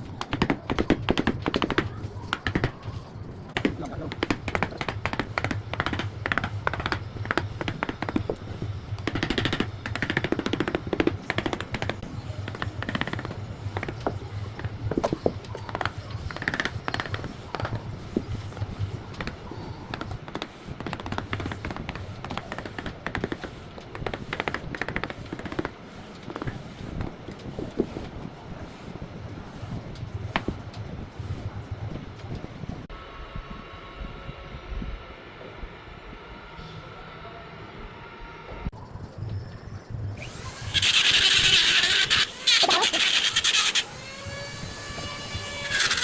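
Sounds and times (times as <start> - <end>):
hand tools tapping and scraping wood: 0.0 - 31.5, 40.7 - 46.0
steady low hum: 0.0 - 46.0.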